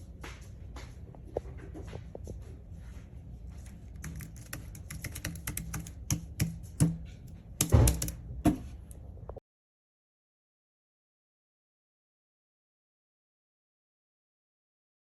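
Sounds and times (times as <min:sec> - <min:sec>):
keypad keys clicking: 0:03.6 - 0:07.0, 0:07.6 - 0:08.2.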